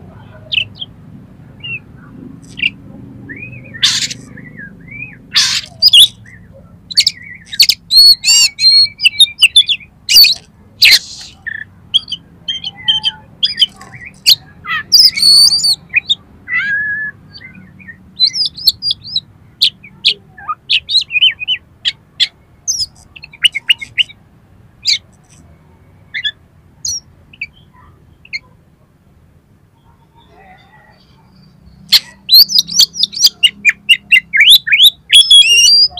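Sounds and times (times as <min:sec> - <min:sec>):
bird singing whistled notes: 0:02.4 - 0:21.6, 0:31.8 - 0:35.9.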